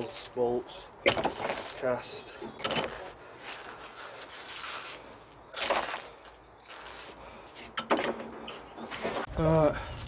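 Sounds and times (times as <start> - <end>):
scrap iron scraping: 5.6 - 9.5.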